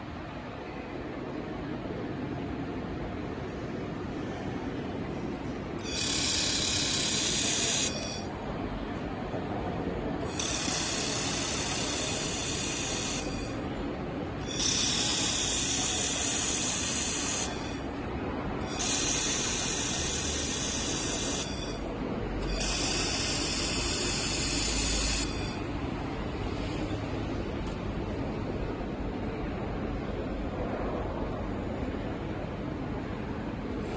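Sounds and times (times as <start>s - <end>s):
high-pitched welding hiss: 10.3s - 13.6s, 14.5s - 17.9s, 18.6s - 21.8s, 22.4s - 25.6s.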